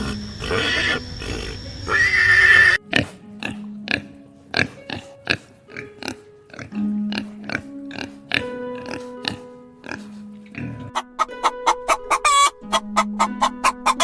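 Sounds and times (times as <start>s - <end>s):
loud animal call: 0.0s - 3.6s, 10.6s - 14.0s
light plucked background music: 0.0s - 14.0s.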